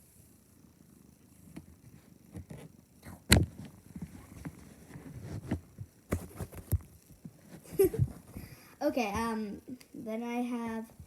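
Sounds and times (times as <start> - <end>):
soft low thumps: 5.3 - 9.4.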